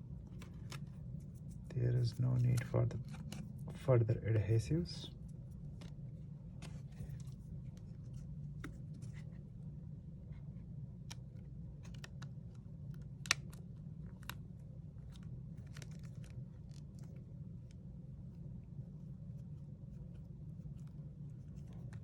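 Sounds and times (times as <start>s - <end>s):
low hum: 0.0s - 22.0s.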